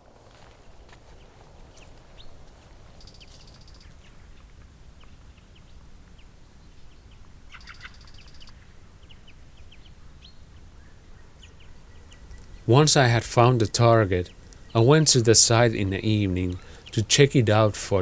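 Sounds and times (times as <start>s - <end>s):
bird rapid trills: 3.0s - 4.0s, 7.5s - 8.7s
birds chirping: 3.0s - 18.0s.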